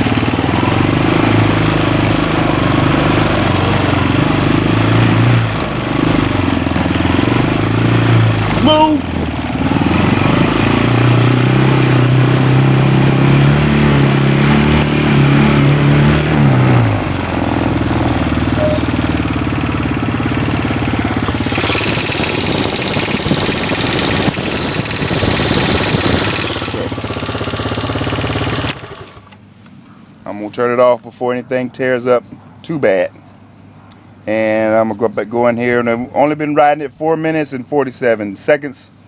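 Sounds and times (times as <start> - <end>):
atv engine tapping and rattling: 0.0 - 30.8.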